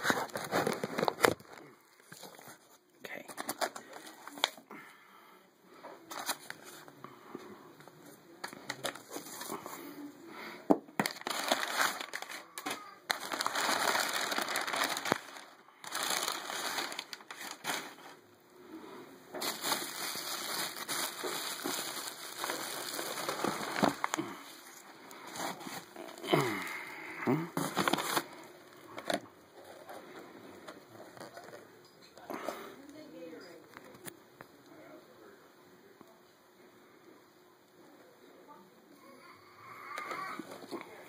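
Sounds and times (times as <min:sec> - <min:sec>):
packing paper crinkling: 0:00.0 - 0:04.6, 0:06.1 - 0:07.0, 0:08.4 - 0:09.8, 0:11.0 - 0:18.2, 0:19.3 - 0:27.0, 0:27.6 - 0:31.6.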